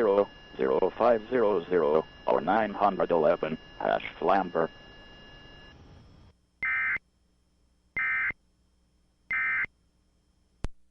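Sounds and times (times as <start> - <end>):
screechy digital data bursts: 0.0 - 5.7.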